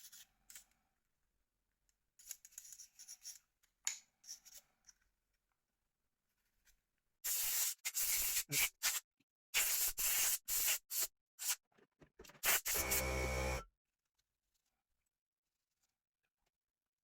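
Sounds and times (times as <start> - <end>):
motor hum: 12.8 - 13.6.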